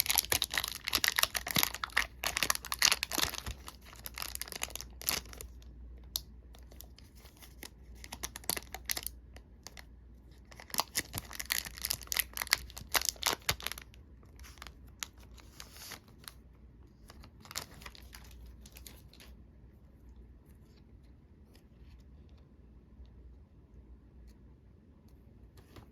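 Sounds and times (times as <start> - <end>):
foil wrapper tearing and crinkling: 0.0 - 5.5, 6.8 - 9.1, 10.5 - 16.1.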